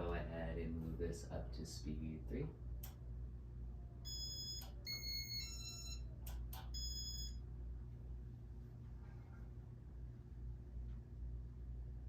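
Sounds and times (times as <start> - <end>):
ceiling fan motor hum: 0.0 - 12.0
electronic beeps: 4.1 - 6.1, 6.7 - 7.4.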